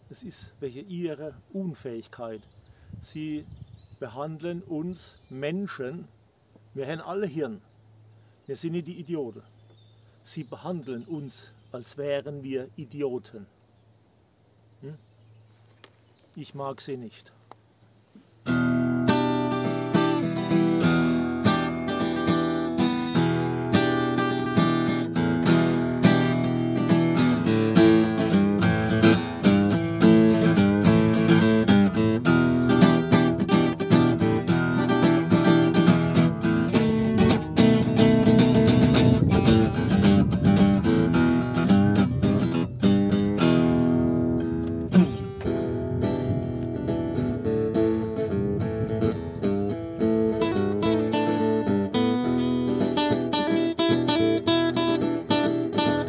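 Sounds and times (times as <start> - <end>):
acoustic guitar playing: 18.4 - 56.0.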